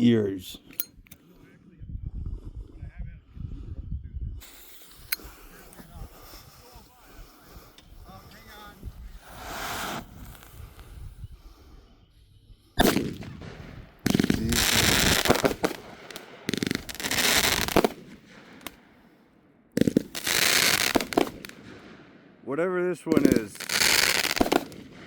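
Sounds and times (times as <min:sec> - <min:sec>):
firecrackers hissing and crackling: 0:04.4 - 0:12.0, 0:12.6 - 0:19.2, 0:19.8 - 0:21.9, 0:23.1 - 0:25.0
firecracker bang: 0:09.1 - 0:10.6, 0:12.8 - 0:18.9, 0:23.1 - 0:25.0.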